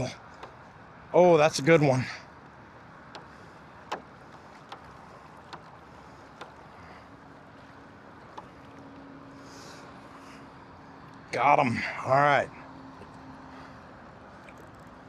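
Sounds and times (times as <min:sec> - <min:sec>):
water around kayak: 0:00.0 - 0:15.0
sharp ticks: 0:03.1 - 0:06.6.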